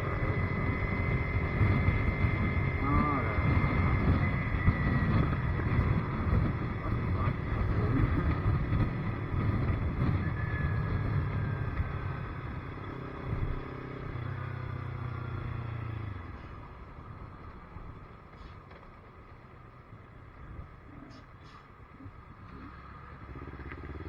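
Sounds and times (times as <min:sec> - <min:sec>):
wind noise: 0:00.0 - 0:12.6
motorcycle engine running: 0:00.0 - 0:16.5.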